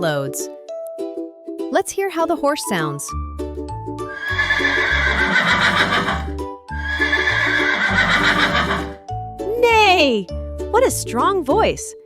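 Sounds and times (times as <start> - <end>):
background music: 0.0 - 12.0
horse neighing: 4.1 - 9.0.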